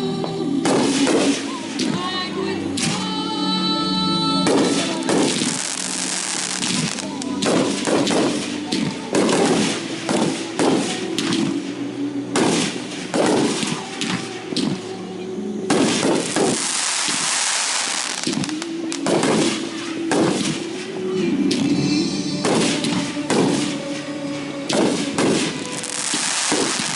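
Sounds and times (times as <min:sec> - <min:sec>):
fireworks hissing crackle: 0:00.0 - 0:02.0, 0:04.4 - 0:15.0, 0:15.7 - 0:21.0, 0:22.3 - 0:26.9
fireworks bangs: 0:00.6 - 0:02.1, 0:04.4 - 0:14.9, 0:15.7 - 0:21.0, 0:22.4 - 0:24.0, 0:24.7 - 0:26.9.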